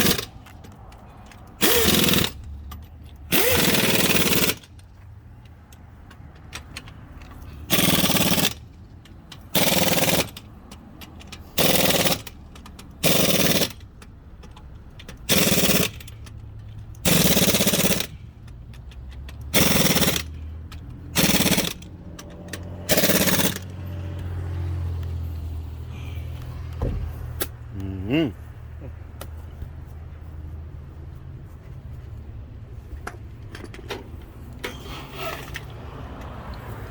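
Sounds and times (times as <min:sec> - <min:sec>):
pneumatic impact wrench bursts: 0:00.0 - 0:00.4, 0:01.6 - 0:02.6, 0:03.3 - 0:04.7, 0:07.5 - 0:08.8, 0:09.4 - 0:10.5, 0:11.2 - 0:13.9, 0:15.2 - 0:16.3, 0:17.0 - 0:18.4, 0:19.5 - 0:23.8, 0:34.6 - 0:35.8.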